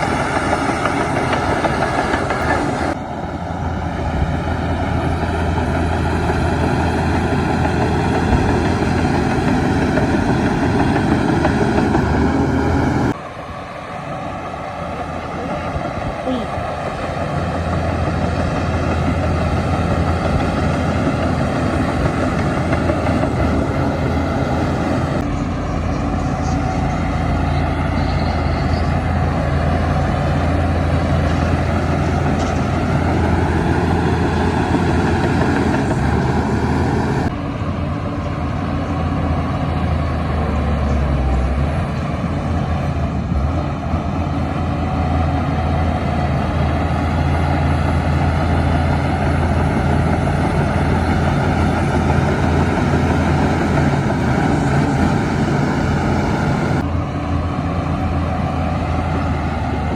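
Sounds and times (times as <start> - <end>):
heavy diesel engine under load: 0.0 - 59.9.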